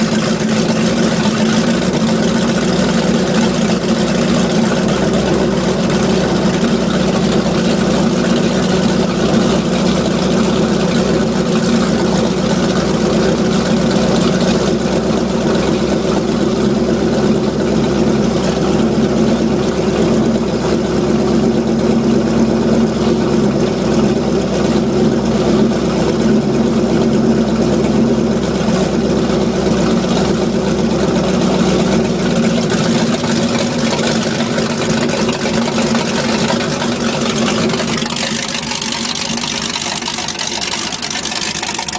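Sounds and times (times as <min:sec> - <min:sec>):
boat engine idling: 0:00.0 - 0:41.9.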